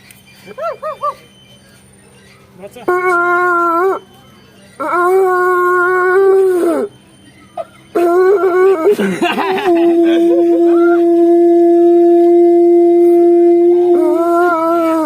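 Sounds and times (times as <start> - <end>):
wind instrument long note: 10.0 - 15.0.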